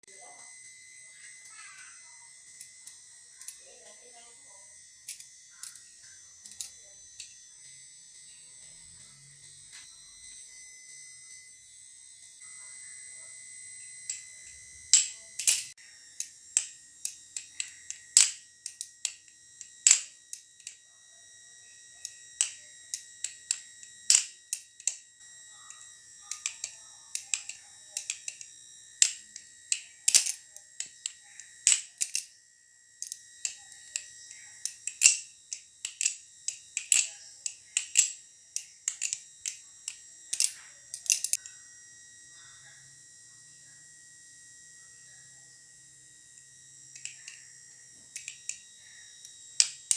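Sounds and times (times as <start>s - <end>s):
butterfly knife metallic clicks: 14.9s - 20.8s, 22.0s - 25.0s, 25.7s - 32.3s, 33.0s - 41.5s, 47.0s - 47.4s, 48.2s - 48.6s.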